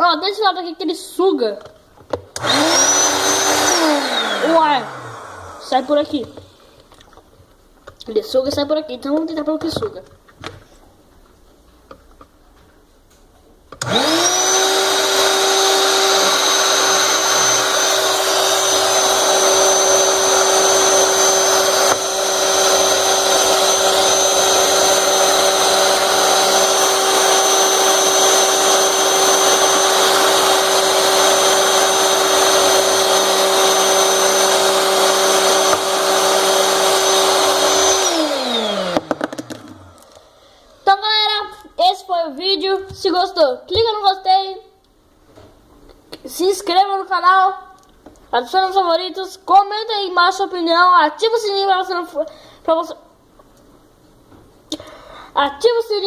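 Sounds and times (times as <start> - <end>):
air pump motor whine: 2.4 - 6.7, 13.8 - 40.9.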